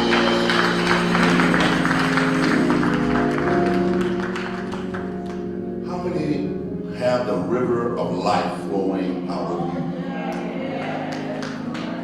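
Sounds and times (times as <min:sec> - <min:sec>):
congregation clapping: 0:00.0 - 0:05.8, 0:10.0 - 0:12.0
held instrumental chords: 0:00.0 - 0:12.0.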